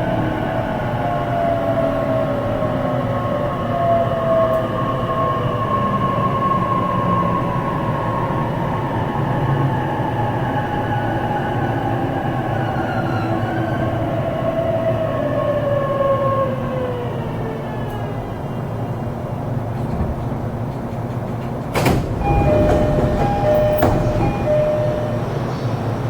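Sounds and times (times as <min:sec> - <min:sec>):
sliding doors opening rush: 0:17.9 - 0:26.0
electric train motor whine: 0:22.0 - 0:26.0
electronic door chime: 0:22.2 - 0:25.5.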